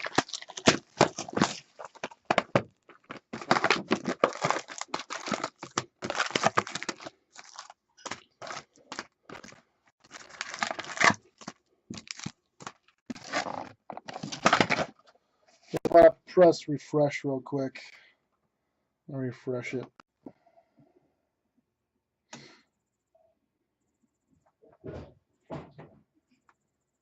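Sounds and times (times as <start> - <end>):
packaging ripping and crinkling: 0.0 - 15.0.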